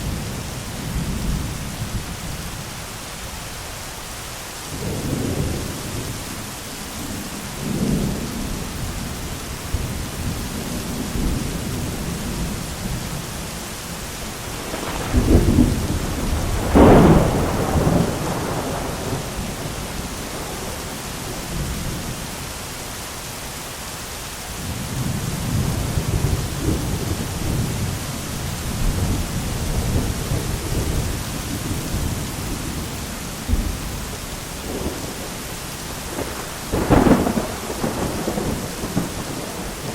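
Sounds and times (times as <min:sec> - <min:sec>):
steady rain hissing: 0:00.0 - 0:39.9
rolling thunder: 0:14.3 - 0:22.2, 0:24.7 - 0:39.9
sharp thunderclaps: 0:14.4 - 0:20.8, 0:33.4 - 0:35.3, 0:35.9 - 0:39.9.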